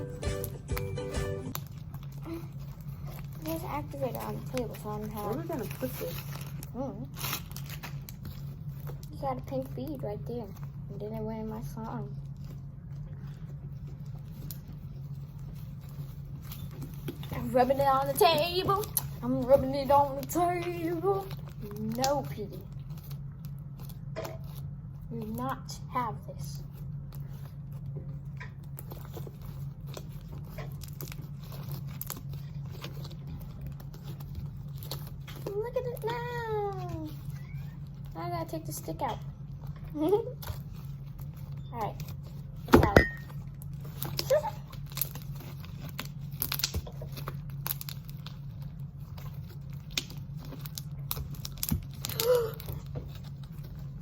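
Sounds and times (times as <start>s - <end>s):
low hum: 0.0s - 54.0s
slime squishing and popping: 40.4s - 54.0s.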